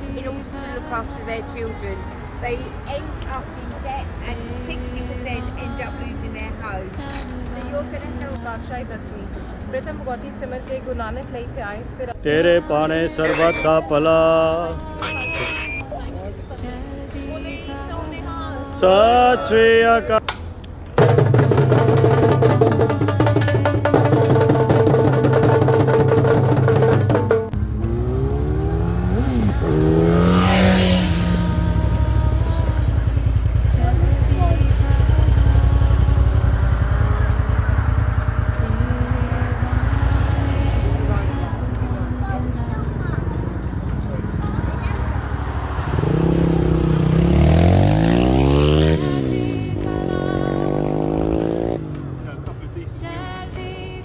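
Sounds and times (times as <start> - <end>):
music with fast percussion: 21.0 - 27.6
vehicle engine accelerating: 21.0 - 53.6.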